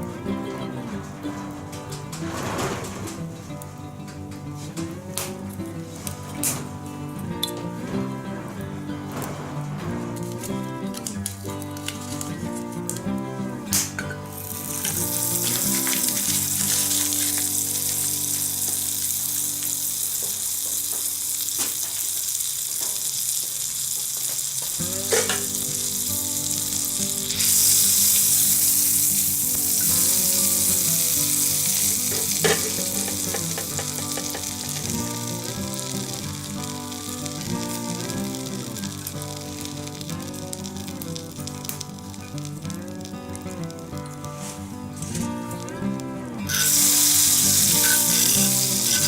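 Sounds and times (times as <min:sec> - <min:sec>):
food sizzling in skillet: 0:10.0 - 0:49.0.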